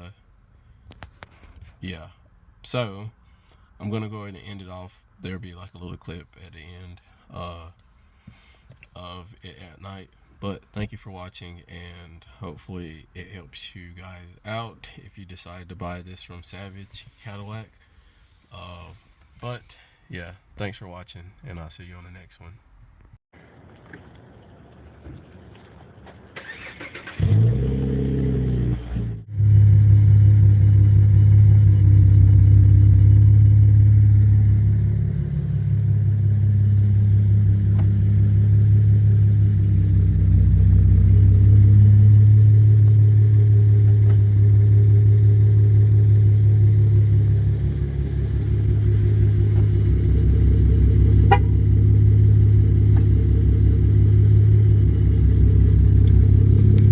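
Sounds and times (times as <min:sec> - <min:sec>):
car engine running: 0:28.5 - 0:56.9.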